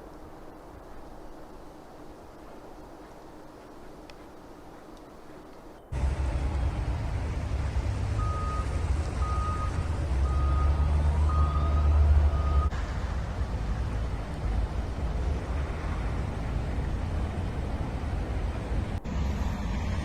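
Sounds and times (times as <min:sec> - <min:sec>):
heavy engine rumble: 0:05.9 - 0:20.0
reversing alarm beeping: 0:08.0 - 0:12.8.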